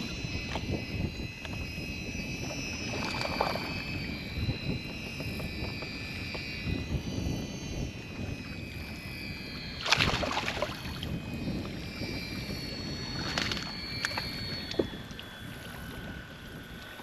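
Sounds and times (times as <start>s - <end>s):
water splashing around kayak: 2.4s - 3.9s, 9.8s - 10.9s, 13.1s - 15.6s.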